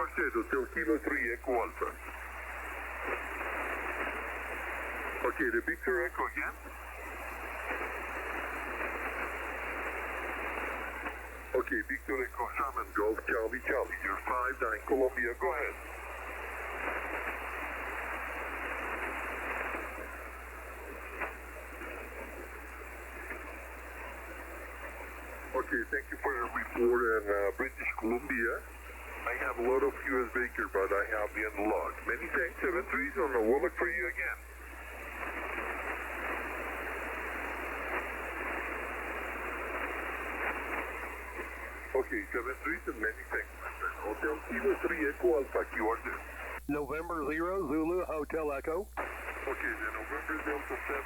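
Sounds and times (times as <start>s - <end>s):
shortwave radio hiss: 0.0s - 51.0s
low hum: 0.2s - 33.6s.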